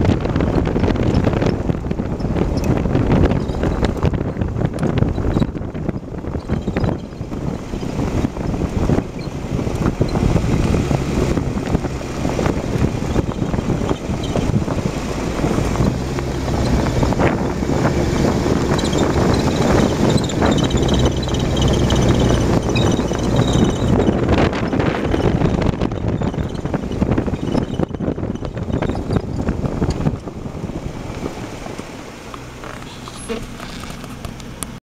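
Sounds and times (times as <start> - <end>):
road and wind noise: 0.0 - 34.8
short high-pitched squeaks: 2.2 - 4.0, 5.0 - 8.0, 9.1 - 9.4, 12.9 - 30.2, 32.5 - 34.2
small knocks and rattles: 31.1 - 34.8.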